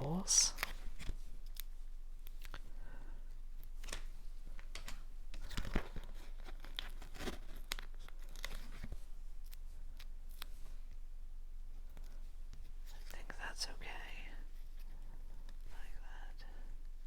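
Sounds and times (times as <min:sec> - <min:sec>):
paper rustling and peeling: 0:03.6 - 0:10.7.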